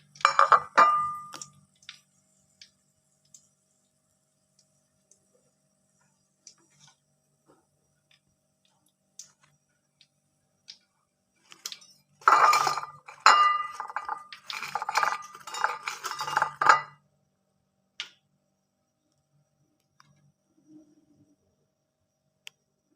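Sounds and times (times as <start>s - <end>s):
kitchen utensils clattering: 0.2s - 1.4s, 12.2s - 17.0s.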